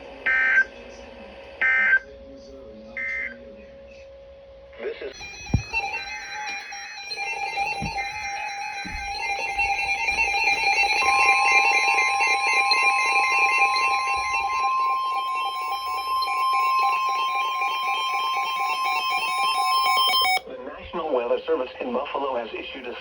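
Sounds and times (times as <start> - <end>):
fast repeating tones: 5.2 - 20.4
loud steady alarm tone: 5.2 - 20.4.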